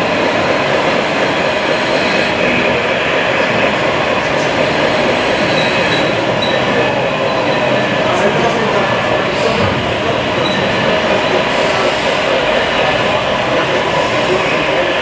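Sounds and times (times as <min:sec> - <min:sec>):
faint high squeals: 0:05.4 - 0:07.8, 0:10.4 - 0:11.0.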